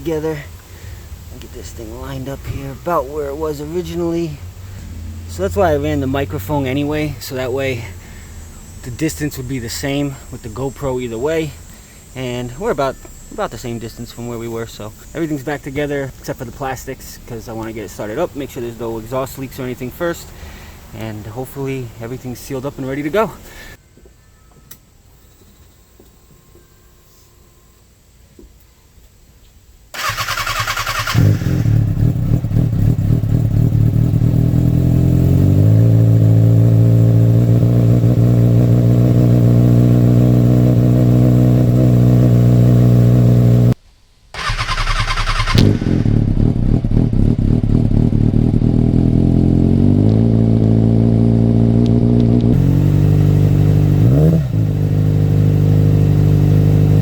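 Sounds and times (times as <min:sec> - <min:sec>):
motorcycle engine idling: 0:02.0 - 0:20.7, 0:30.0 - 0:43.7, 0:44.4 - 0:57.0
motorcycle starter cranking: 0:30.0 - 0:33.0, 0:44.4 - 0:48.0.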